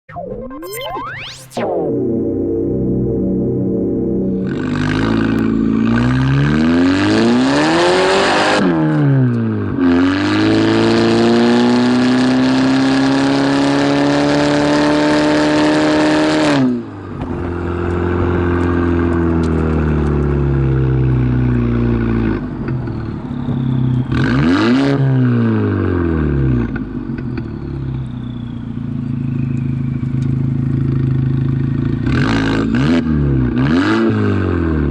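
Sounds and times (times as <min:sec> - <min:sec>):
car engine revving: 0:00.0 - 0:28.5.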